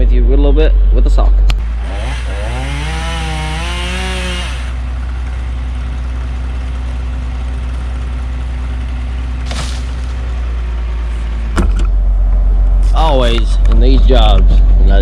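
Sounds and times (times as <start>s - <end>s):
low engine drone: 0.0s - 15.0s
chainsaw running at high revs: 1.6s - 8.2s.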